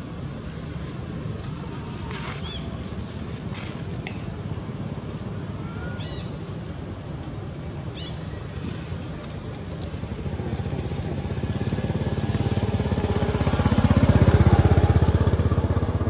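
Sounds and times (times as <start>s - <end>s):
motorcycle passing: 8.0s - 16.0s.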